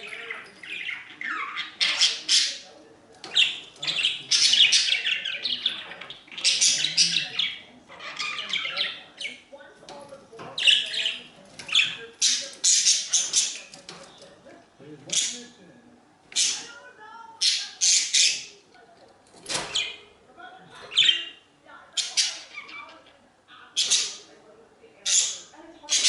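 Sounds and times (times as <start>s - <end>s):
budgerigars chirping and squawking: 0.0s - 9.4s, 10.5s - 14.0s, 15.1s - 15.6s, 16.3s - 16.8s, 17.4s - 18.6s, 19.6s - 20.1s, 20.8s - 24.4s, 25.0s - 26.0s.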